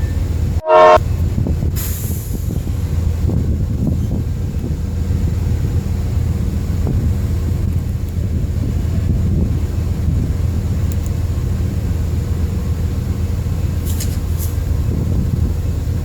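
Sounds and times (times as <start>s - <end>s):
train rumbling by: 0.0s - 16.0s
short loud horn blast: 0.6s - 1.1s.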